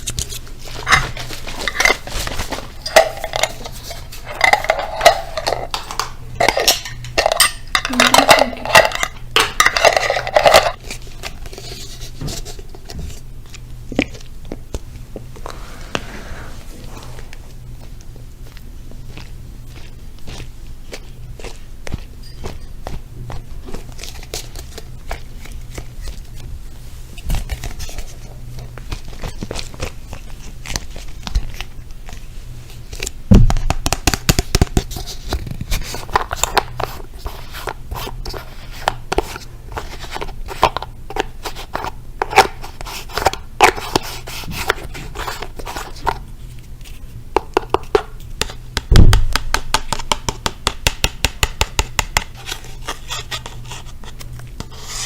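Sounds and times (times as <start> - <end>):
hand tapping and scratching objects: 0.0 - 55.0.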